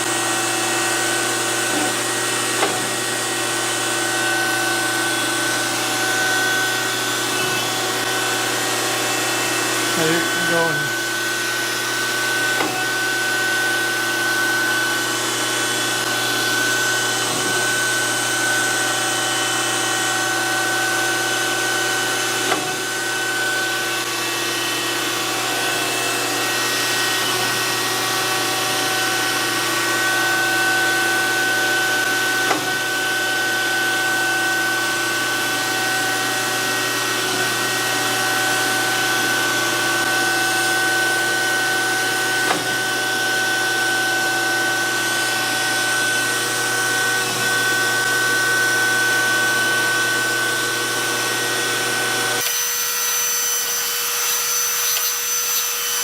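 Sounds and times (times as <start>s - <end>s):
grinder spindle whining: 0.0s - 56.0s
hydraulic pump humming: 0.0s - 56.0s
hissing grinding sound: 9.4s - 12.7s.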